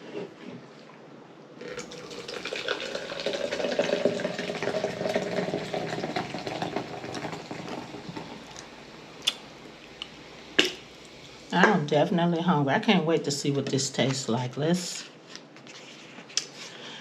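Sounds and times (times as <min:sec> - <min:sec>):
soda fizzing as poured: 0:01.6 - 0:11.5.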